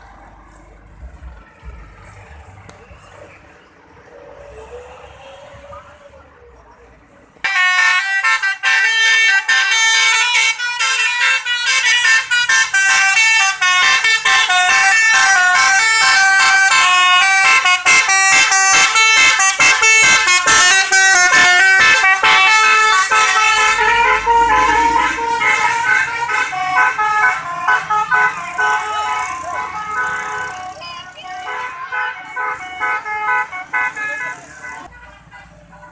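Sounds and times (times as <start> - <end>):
multi-tone bus horn tune: 7.5 - 35.9.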